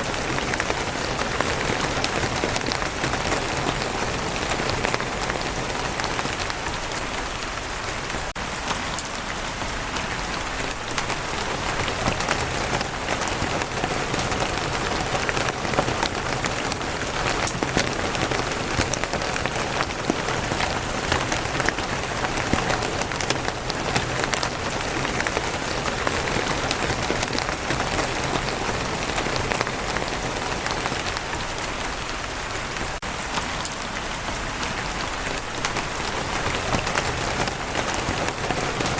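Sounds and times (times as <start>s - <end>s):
rain on a wooden roof: 0.0s - 38.9s.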